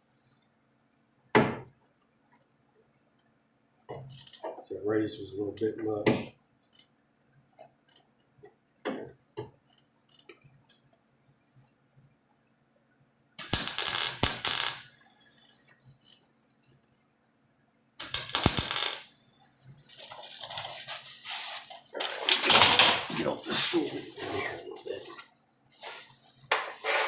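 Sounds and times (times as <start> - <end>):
welding crackle: 13.4 - 16.3, 18.0 - 25.2.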